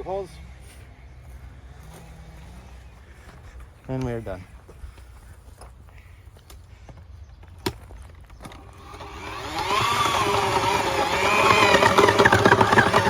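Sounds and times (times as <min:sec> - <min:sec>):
post-hole auger motor running: 0:08.4 - 0:13.0.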